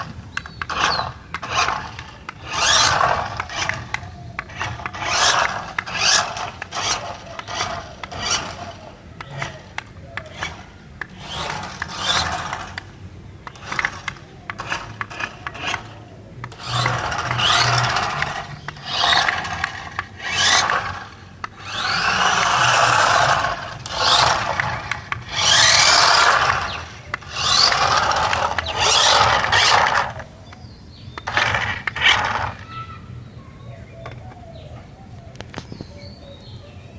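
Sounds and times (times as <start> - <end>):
toy car electric motor whining: 0.0 - 30.3, 31.2 - 33.0
wheels scraping on surface: 0.0 - 30.4, 31.1 - 32.9.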